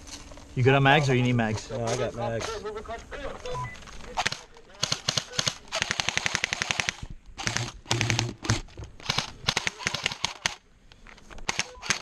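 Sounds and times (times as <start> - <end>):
airsoft gun shots: 4.2 - 10.6.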